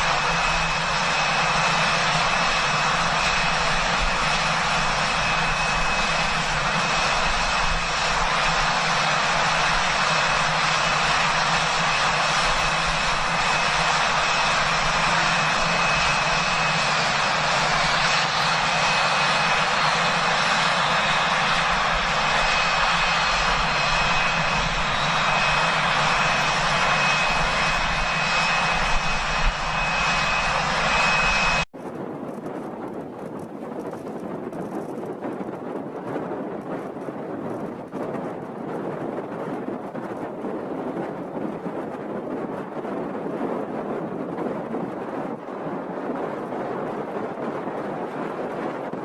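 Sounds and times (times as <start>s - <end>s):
aircraft engine and airflow noise: 0.0s - 49.0s.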